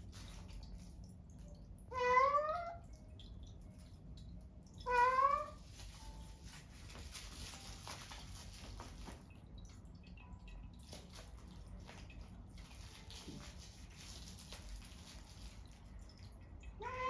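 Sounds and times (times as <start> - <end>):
cat crying: 1.9 - 2.8, 4.8 - 5.6, 16.8 - 17.0.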